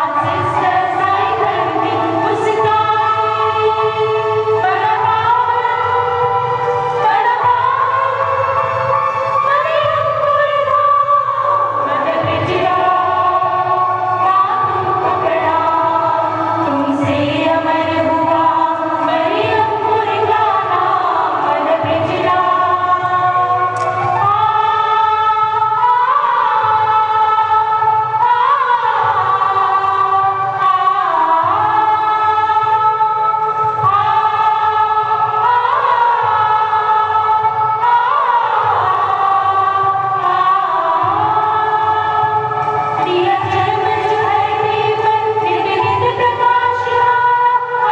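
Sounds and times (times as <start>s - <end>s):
choir singing: 0.0s - 47.9s.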